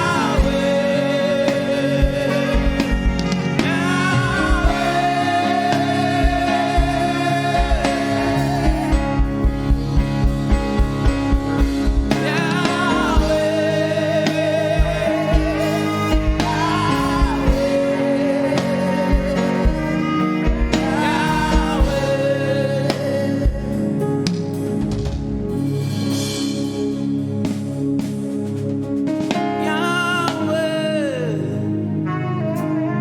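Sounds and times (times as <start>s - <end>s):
person singing with vibrato: 0.0s - 10.1s, 12.1s - 24.3s, 29.6s - 33.0s
sustained keyboard chords: 0.0s - 33.0s.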